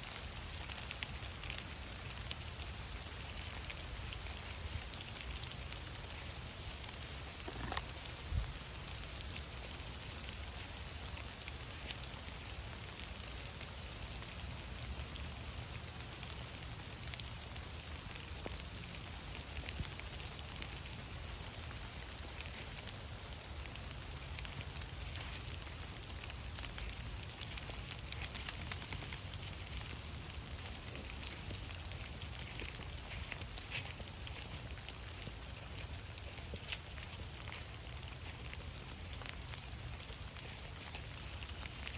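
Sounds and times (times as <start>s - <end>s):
rain pattering on leaves: 0.0s - 41.9s
sharp clicks: 28.3s - 29.3s.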